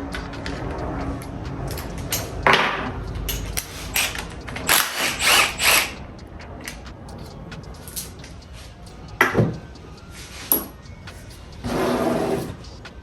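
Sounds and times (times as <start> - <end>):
metal clicks and knocks: 0.1 - 8.4
ratchet wrench ratcheting: 1.4 - 8.5.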